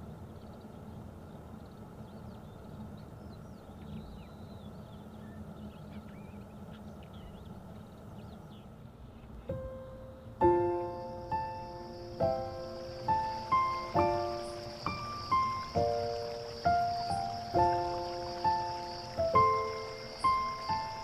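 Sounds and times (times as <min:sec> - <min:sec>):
outdoor background hiss: 0:00.0 - 0:21.0
small birds chirping: 0:00.0 - 0:21.0
piano music: 0:09.5 - 0:21.0.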